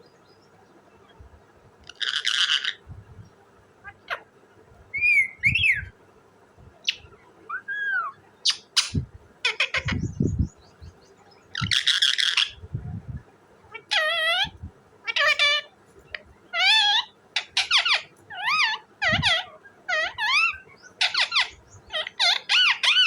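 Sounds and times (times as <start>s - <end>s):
parakeet screeching: 1.8s - 2.8s, 6.9s - 10.1s, 11.6s - 12.6s, 13.7s - 15.7s, 16.5s - 23.0s
parakeet whistles and chirps: 4.9s - 5.9s, 6.9s - 10.0s, 16.6s - 23.0s.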